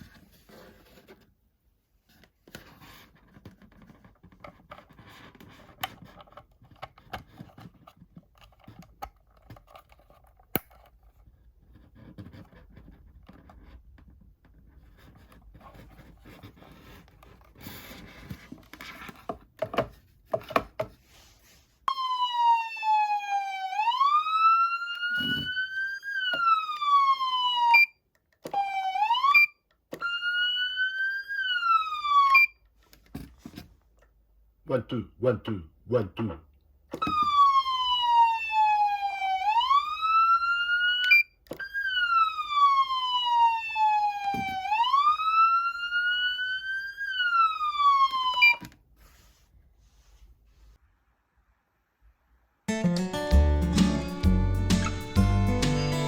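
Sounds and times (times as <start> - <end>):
wailing siren: 21.9 - 32.6, 37.0 - 48.6.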